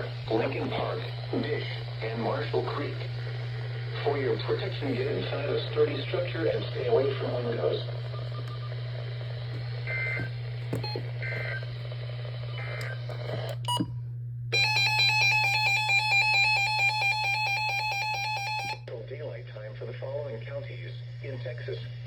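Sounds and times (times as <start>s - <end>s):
steady hum: 0.0s - 22.0s
electronic alarm beeping: 9.8s - 11.7s, 14.6s - 18.8s.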